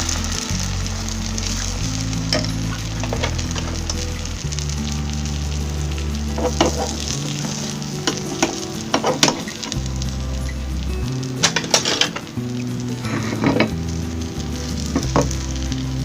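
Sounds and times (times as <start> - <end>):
background music: 0.0 - 16.0
oil sizzling in a frying pan: 0.0 - 16.0
utensil clicking against pan: 6.4 - 9.8.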